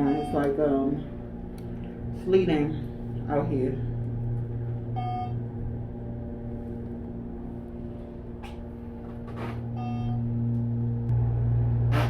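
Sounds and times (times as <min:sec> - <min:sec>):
car engine hum inside cabin: 0:00.0 - 0:12.0
noisy swishes: 0:10.9 - 0:12.0.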